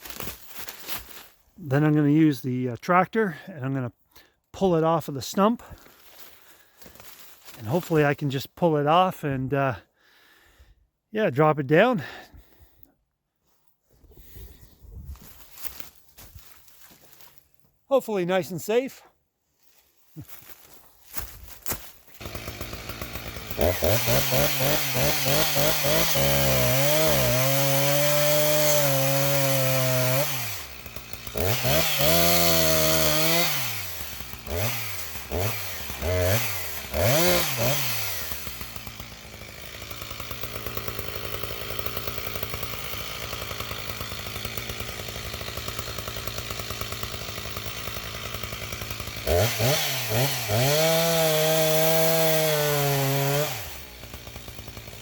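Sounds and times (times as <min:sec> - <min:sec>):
chainsaw revving and idling: 0:00.0 - 0:03.9, 0:04.6 - 0:09.9, 0:20.2 - 0:55.0.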